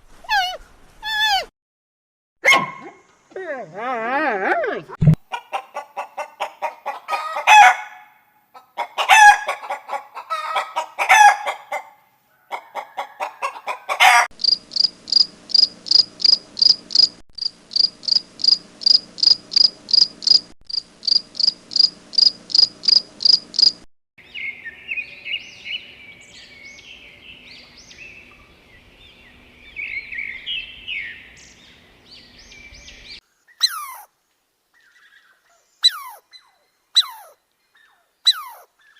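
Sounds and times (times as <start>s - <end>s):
chickens clucking: 5.0s - 7.8s, 8.6s - 14.3s
rooster crowing: 6.9s - 8.2s, 8.8s - 14.3s
high chirping and twittering: 14.4s - 17.1s, 17.7s - 20.4s, 21.0s - 28.4s, 35.8s - 38.9s.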